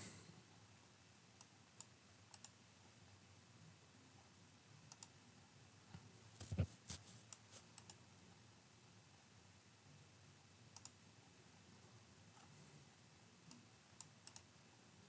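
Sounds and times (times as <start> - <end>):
mouse and keyboard clicks: 13.5 - 14.5.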